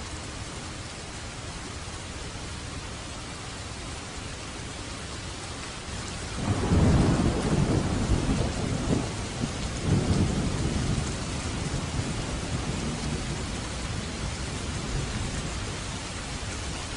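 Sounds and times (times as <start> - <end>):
steady rain falling: 0.0 - 16.9
thunder rumbling: 6.3 - 16.2.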